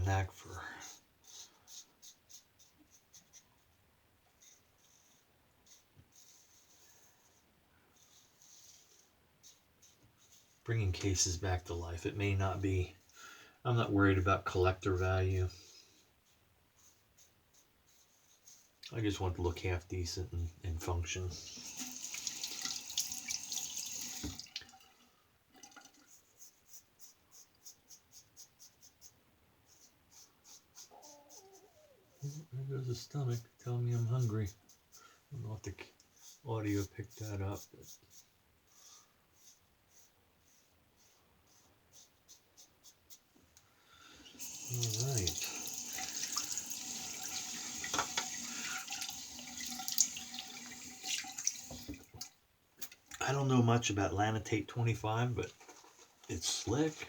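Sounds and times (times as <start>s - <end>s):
tap water running: 21.4s - 25.0s, 25.6s - 26.0s, 44.3s - 52.3s
shaving brush swishing lather: 26.1s - 43.3s, 44.4s - 47.8s.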